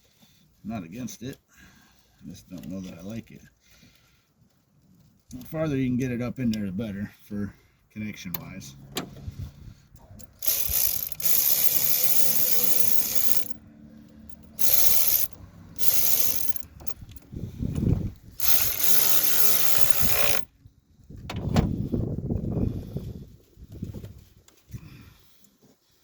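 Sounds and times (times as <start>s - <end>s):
ratchet tool clicking: 10.2s - 13.6s, 14.3s - 17.3s, 18.4s - 20.5s.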